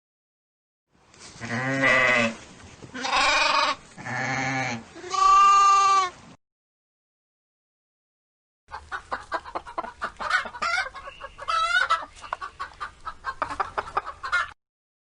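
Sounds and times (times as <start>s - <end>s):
sheep bleating: 1.4s - 2.4s, 3.0s - 6.1s.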